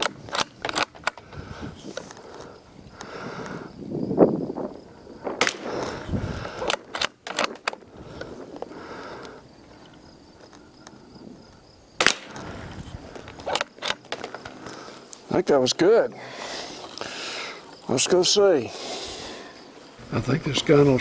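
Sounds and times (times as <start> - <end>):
sharp mechanical clicks: 0.0 - 1.2
rifle shot: 5.2 - 5.8, 12.0 - 12.4.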